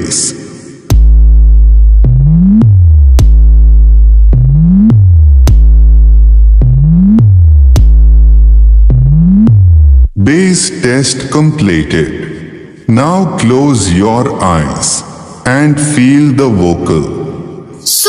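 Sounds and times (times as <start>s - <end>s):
swooping synth bass: 0.9s - 10.3s.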